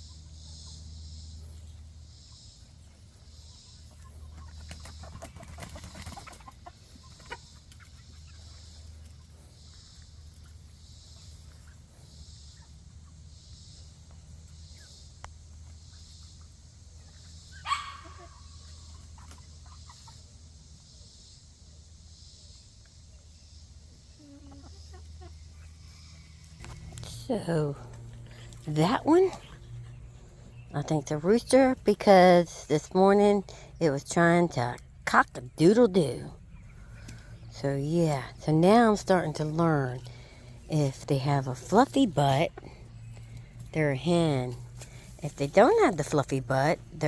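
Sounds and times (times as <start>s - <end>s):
chickens clucking: 0.0s - 47.0s
chicken squawk: 3.9s - 8.8s, 17.0s - 20.3s, 24.2s - 26.8s
steady low rumble: 25.2s - 47.0s.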